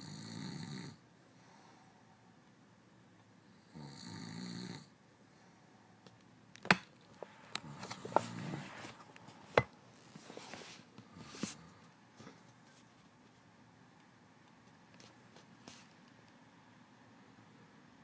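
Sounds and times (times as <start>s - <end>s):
man snoring: 0.0s - 1.0s, 3.6s - 4.9s.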